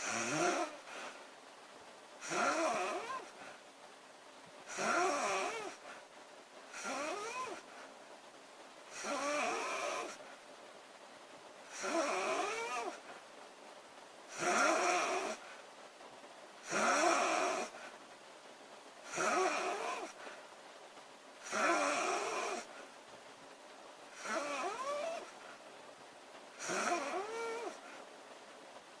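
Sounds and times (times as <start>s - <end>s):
girl snoring: 0.0s - 1.2s, 2.2s - 3.6s, 4.7s - 6.0s, 6.7s - 7.7s, 8.9s - 10.2s, 11.7s - 13.1s, 14.3s - 15.5s, 16.6s - 17.9s, 19.1s - 20.3s, 21.4s - 22.8s, 24.1s - 25.5s, 26.6s - 28.0s
quiet breathing: 0.0s - 29.0s.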